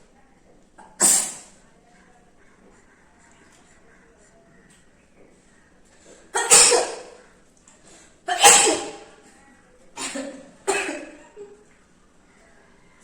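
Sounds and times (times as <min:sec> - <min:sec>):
person sneezing: 0:00.8 - 0:01.5, 0:06.4 - 0:07.2, 0:08.3 - 0:09.1.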